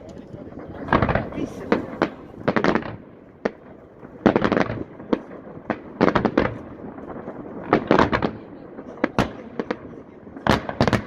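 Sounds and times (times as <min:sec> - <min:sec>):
fireworks bursting with sharp bangs: 0:00.0 - 0:11.0.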